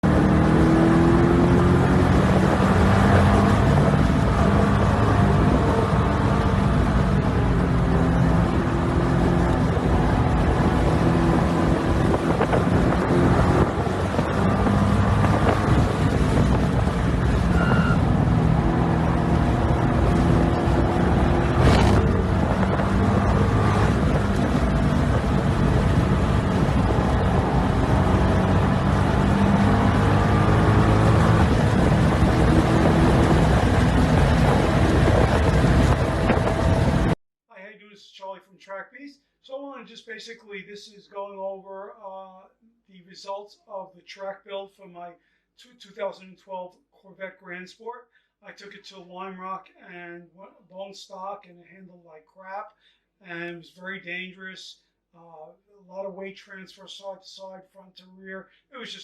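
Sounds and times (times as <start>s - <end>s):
sports car engine revving: 0.0s - 37.2s.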